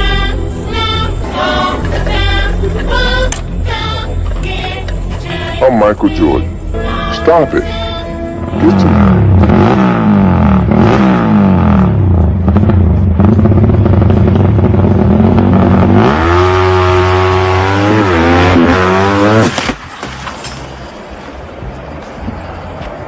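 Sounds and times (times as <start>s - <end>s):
motorcycle engine revving: 7.4s - 19.8s.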